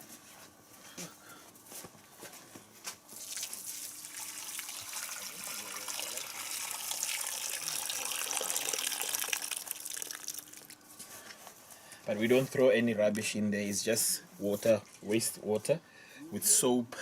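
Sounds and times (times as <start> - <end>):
water pouring into hole: 3.2 - 10.8.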